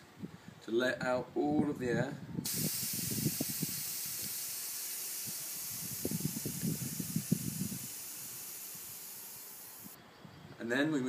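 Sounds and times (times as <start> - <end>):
air hissing from inner tube: 2.4 - 10.0.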